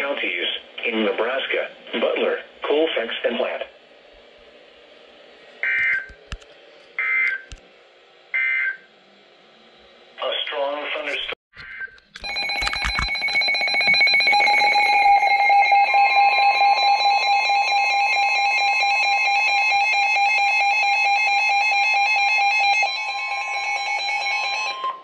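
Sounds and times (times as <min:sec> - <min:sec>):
two-tone alarm: 0:07.0 - 0:07.5, 0:08.4 - 0:08.9, 0:11.7 - 0:25.0.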